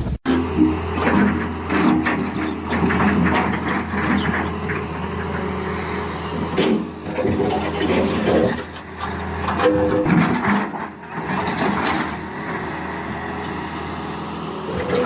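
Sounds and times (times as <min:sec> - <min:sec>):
heavy truck engine running: 0:00.0 - 0:15.0
knocks and clatter: 0:06.4 - 0:12.2.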